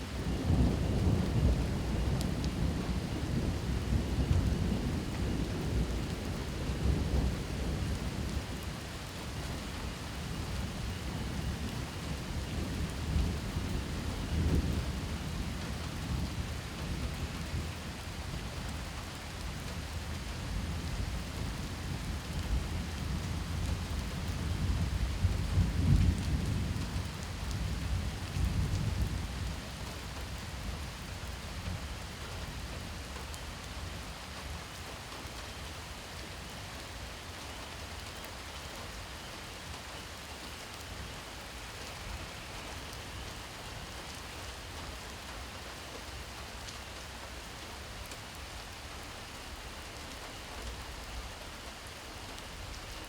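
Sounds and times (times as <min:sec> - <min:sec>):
steady rain: 0:00.0 - 0:53.0
thunder rumbling: 0:00.1 - 0:34.0.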